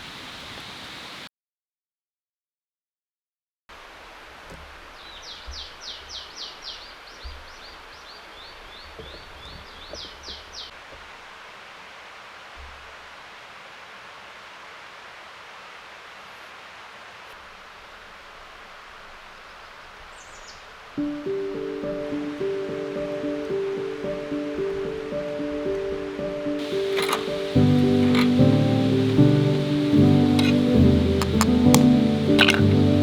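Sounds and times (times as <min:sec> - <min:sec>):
forest ambience hiss: 0:00.0 - 0:01.3, 0:03.7 - 0:33.0.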